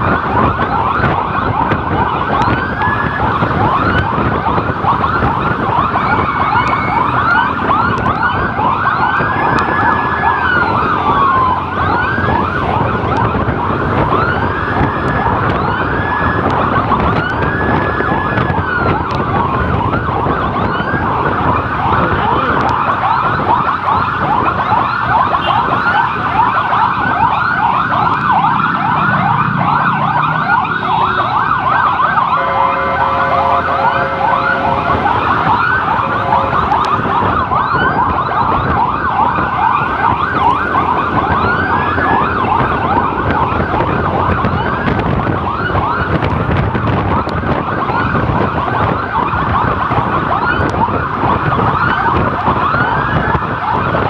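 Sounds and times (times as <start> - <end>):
emergency siren yelping: 0.0 - 54.0
horn sounding steadily: 32.1 - 37.1.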